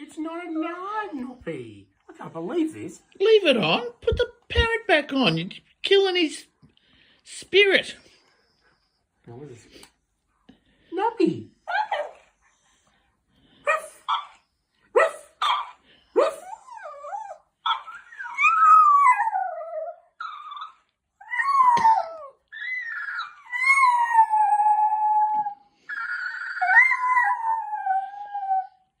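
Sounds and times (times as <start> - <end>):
dog yipping: 11.7 - 12.3, 13.7 - 14.4, 15.0 - 19.2, 20.2 - 23.8.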